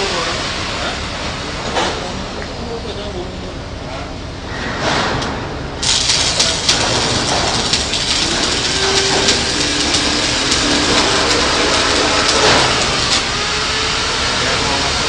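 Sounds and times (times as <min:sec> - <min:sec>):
welding arc crackling with pops: 0:05.8 - 0:13.8.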